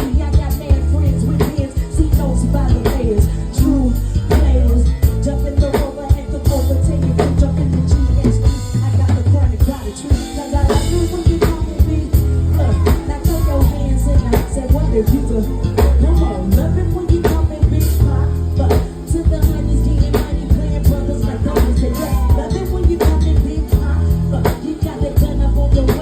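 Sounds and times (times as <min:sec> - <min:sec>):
bass line: 0:00.0 - 0:26.0
drum kit beat: 0:00.0 - 0:26.0
person singing: 0:00.0 - 0:26.0.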